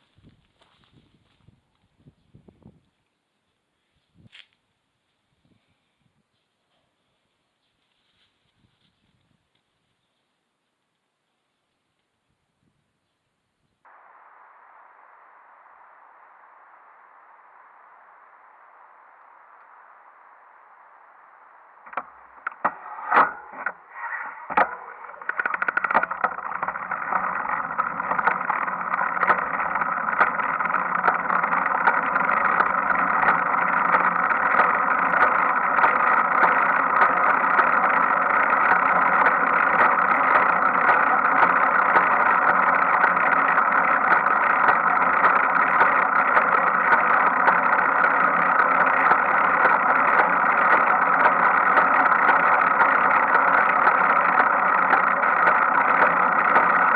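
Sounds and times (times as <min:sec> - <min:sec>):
bicycle wheel whirring: 0:20.7 - 0:56.9
bicycle wheel knocking: 0:24.7 - 0:56.9.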